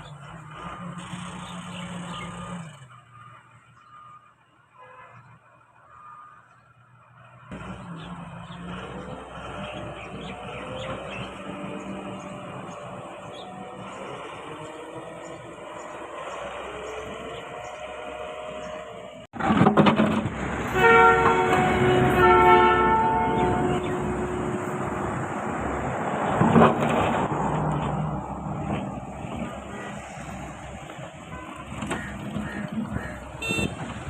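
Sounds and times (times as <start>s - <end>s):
multi-note horn chord: 20.7s - 25.2s.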